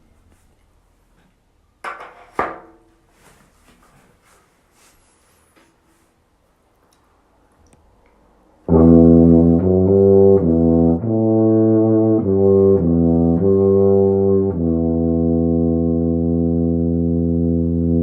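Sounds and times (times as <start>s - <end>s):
tuba playing: 8.7s - 18.0s.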